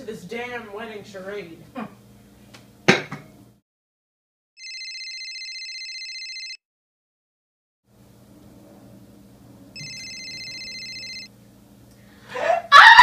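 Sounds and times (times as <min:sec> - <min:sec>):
telephone ringing: 0:04.6 - 0:06.6, 0:09.8 - 0:11.3.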